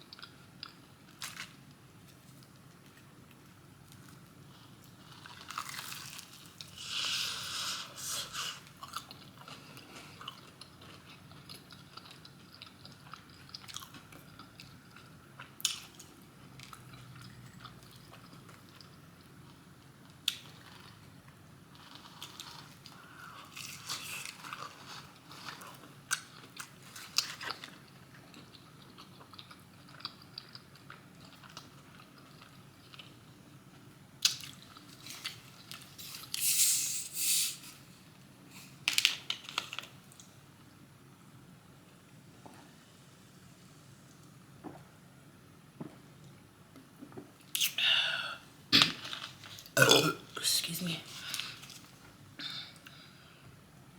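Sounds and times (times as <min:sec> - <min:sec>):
crunchy bites and chewing: 0:05.0 - 0:09.5.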